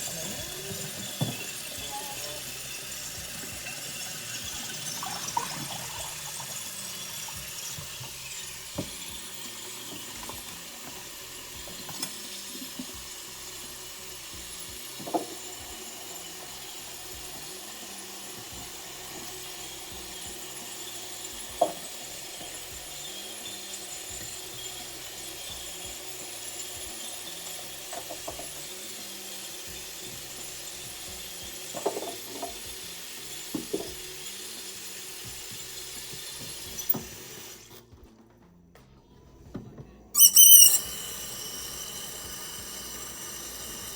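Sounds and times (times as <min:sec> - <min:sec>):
kitchenware clinking: 0:00.0 - 0:13.0
tap water running: 0:00.0 - 0:37.8, 0:40.2 - 0:43.9.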